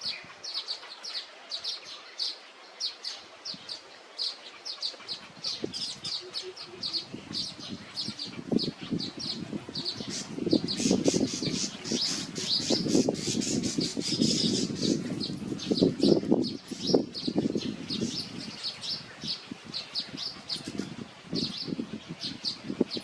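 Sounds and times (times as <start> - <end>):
weaver birds chirping: 0.0 - 23.0
rustling and fluttering at nest: 4.6 - 17.2.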